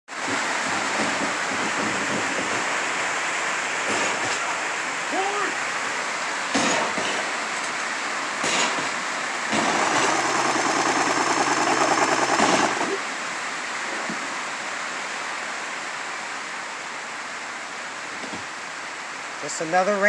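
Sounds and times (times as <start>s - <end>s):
steady rain: 0.1s - 20.0s
sewing machine running: 9.5s - 13.0s.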